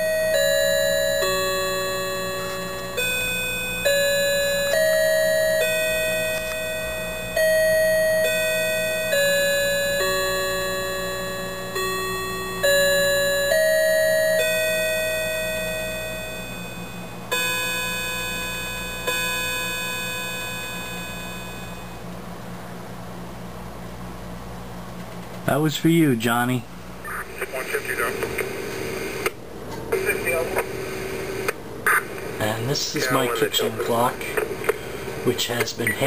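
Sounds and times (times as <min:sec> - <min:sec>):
rod chime melody: 0:00.0 - 0:22.0
clock hour strikes: 0:00.0 - 0:22.1.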